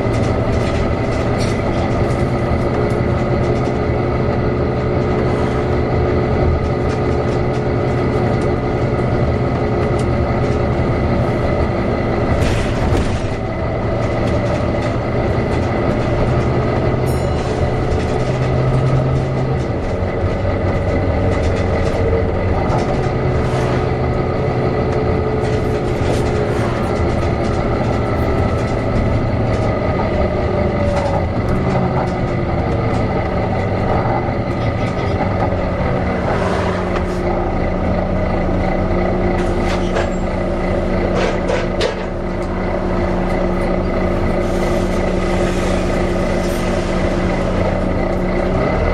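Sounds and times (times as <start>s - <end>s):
bus engine running: 0.0s - 48.9s
light rattles and clicks: 0.1s - 4.4s.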